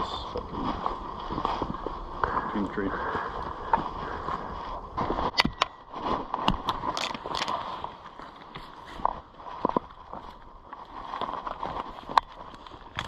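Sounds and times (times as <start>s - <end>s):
wood and brush knocking and snapping: 5.3s - 7.8s.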